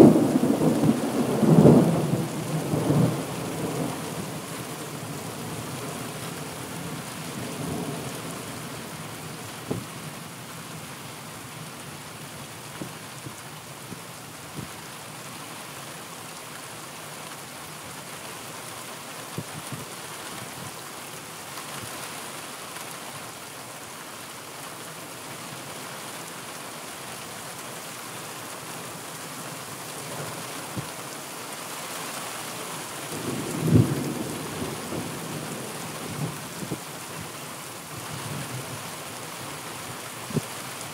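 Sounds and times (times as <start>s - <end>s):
low rumble of thunder: 0.0s - 4.4s, 33.1s - 37.2s
steady rain: 0.0s - 40.9s.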